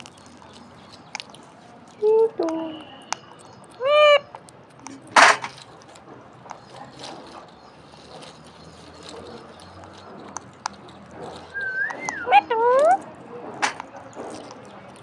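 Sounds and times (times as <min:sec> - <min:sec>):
faint clicks: 0:00.0 - 0:15.0
parakeet squawk: 0:11.6 - 0:13.0.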